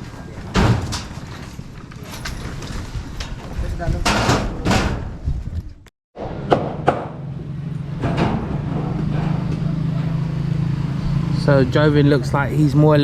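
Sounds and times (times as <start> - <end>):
metallic knocks and bangs: 2.0 - 5.4, 7.9 - 10.2.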